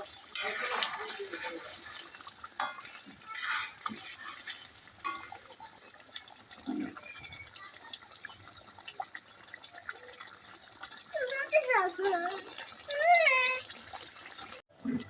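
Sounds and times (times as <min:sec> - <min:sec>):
spoon scraping cooking pot: 0:02.6 - 0:05.4.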